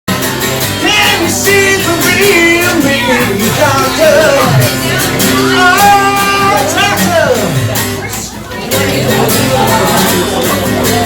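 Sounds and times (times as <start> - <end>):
loud rock music: 0.1 - 11.0
person singing: 0.6 - 7.6.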